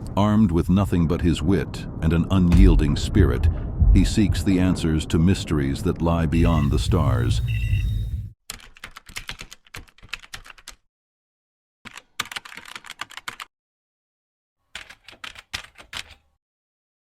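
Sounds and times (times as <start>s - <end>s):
typing on computer keyboard: 8.5s - 10.8s, 11.9s - 13.5s, 14.7s - 16.2s.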